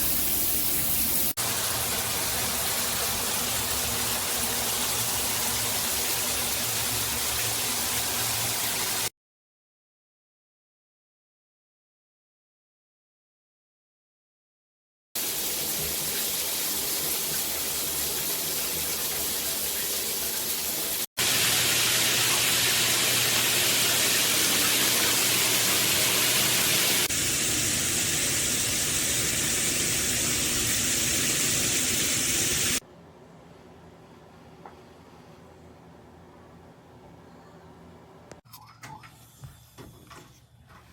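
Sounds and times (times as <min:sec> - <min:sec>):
shower head spraying water: 0:00.0 - 0:09.1, 0:15.2 - 0:32.8.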